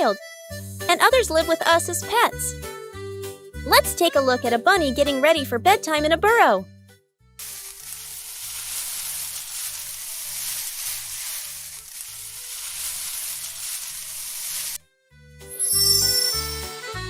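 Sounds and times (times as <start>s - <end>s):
steady hiss: 7.4s - 14.8s.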